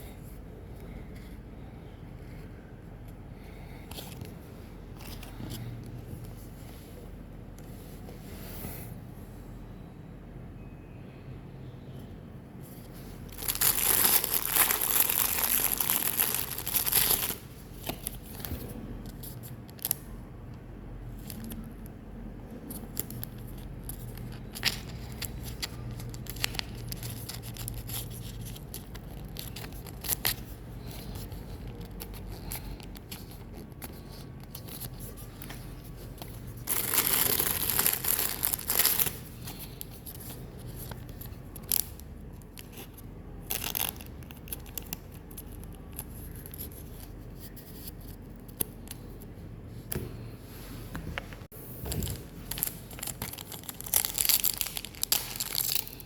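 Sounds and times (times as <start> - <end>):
packaging and cards rustling: 13.2 - 20.1, 22.6 - 49.2, 51.8 - 56.0
wrappers being torn open: 13.4 - 18.5, 22.7 - 35.5, 36.2 - 47.1, 52.0 - 56.0.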